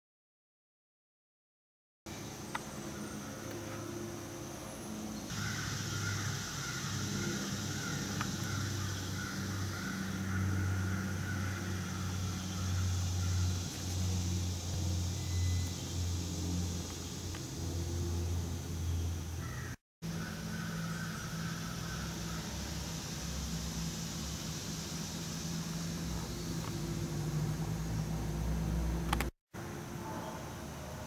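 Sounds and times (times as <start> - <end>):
hiss: 5.3 - 10.0, 20.9 - 27.4.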